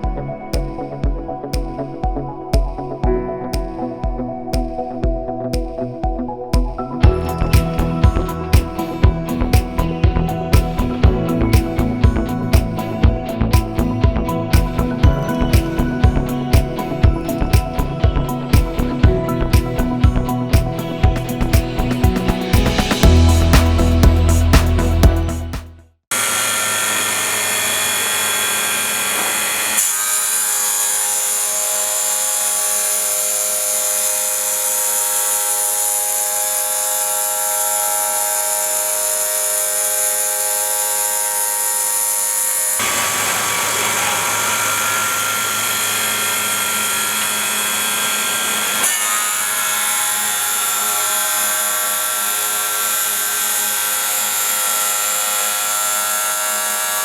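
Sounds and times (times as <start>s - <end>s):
tile cutting blades whining: 26.1s - 57.0s.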